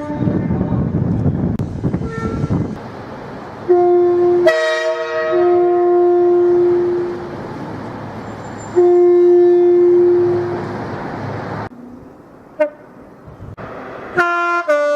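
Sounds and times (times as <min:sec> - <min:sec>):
train horn blasts: 0:00.0 - 0:00.5, 0:02.0 - 0:02.6, 0:03.7 - 0:07.3, 0:08.7 - 0:10.7, 0:14.1 - 0:14.9.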